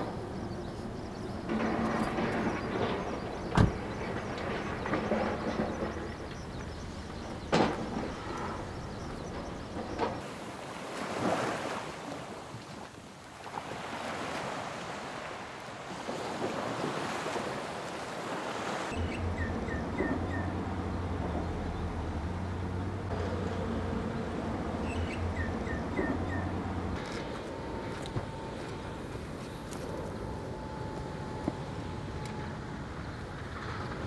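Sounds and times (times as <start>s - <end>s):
waves washing ashore: 0.0s - 34.0s
steady low rumble: 19.0s - 34.0s.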